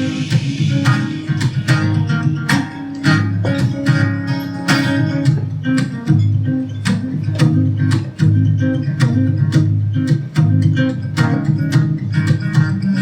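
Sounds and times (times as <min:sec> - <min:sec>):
live band playing: 0:00.0 - 0:06.2
plucked guitar picking: 0:00.0 - 0:13.0.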